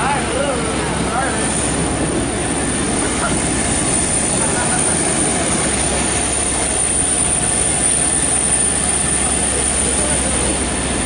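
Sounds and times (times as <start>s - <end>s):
aircraft power unit whine and hum: 0.0s - 11.0s
faint passenger chatter: 0.0s - 11.0s.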